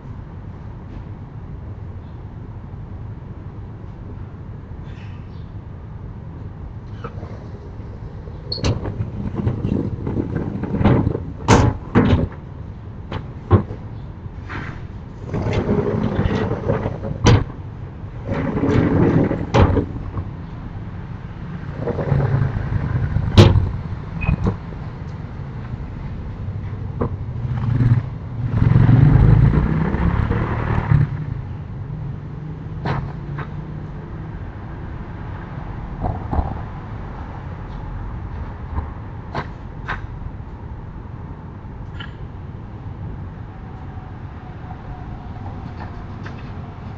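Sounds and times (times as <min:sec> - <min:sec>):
sliding shutters rumbling: 0:06.6 - 0:41.8, 0:42.4 - 0:46.9.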